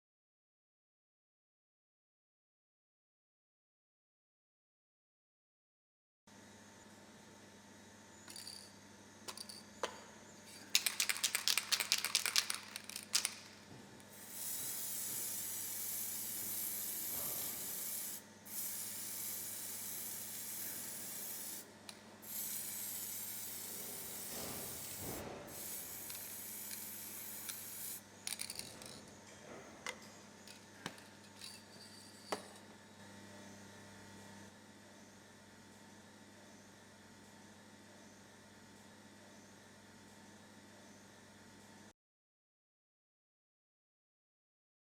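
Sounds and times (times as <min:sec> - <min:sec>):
aerosol can rattling: 0:10.6 - 0:13.6
aerosol spray hissing: 0:14.1 - 0:28.0.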